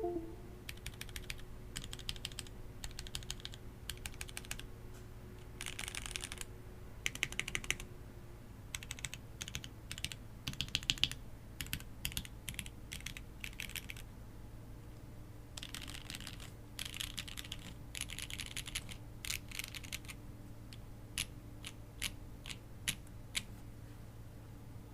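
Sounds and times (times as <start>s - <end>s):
mechanical keyboard typing: 0.7s - 4.6s, 5.6s - 6.5s, 7.1s - 7.8s, 8.7s - 14.0s, 15.6s - 20.2s.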